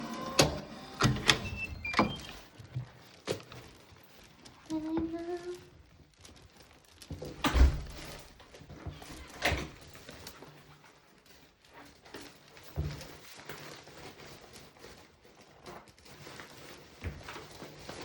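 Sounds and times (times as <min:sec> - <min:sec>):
door lock clunks and clicks: 0:00.4 - 0:02.3.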